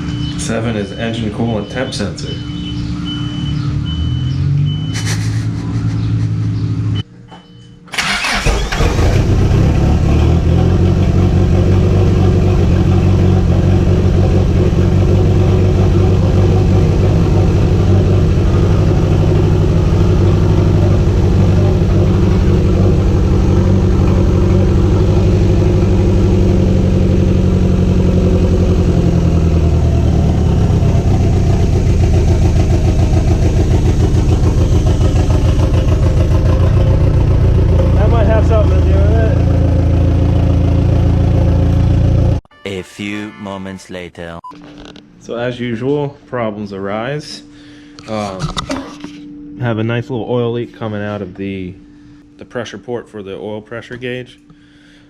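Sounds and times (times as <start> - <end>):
car engine starting and running: 2.6 - 7.0, 7.9 - 42.4.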